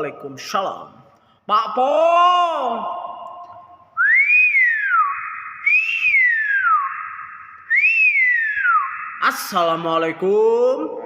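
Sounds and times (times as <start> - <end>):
myna whistling: 4.0 - 9.3.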